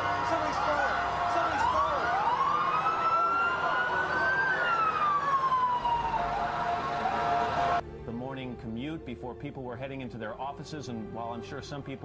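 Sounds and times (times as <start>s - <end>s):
emergency sirens wailing: 0.0s - 7.8s.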